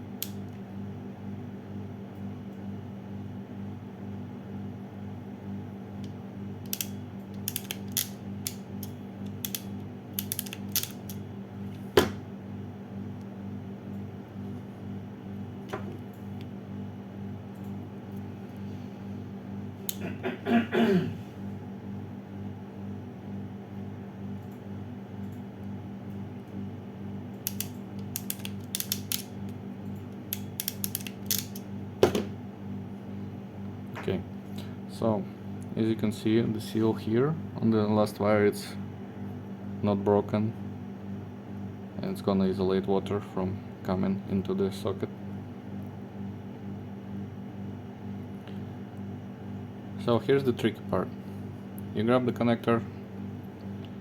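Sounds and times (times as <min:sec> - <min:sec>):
crimping tool ratchet clicks: 0:06.7 - 0:09.6, 0:10.2 - 0:11.2, 0:27.4 - 0:29.3, 0:30.3 - 0:31.6.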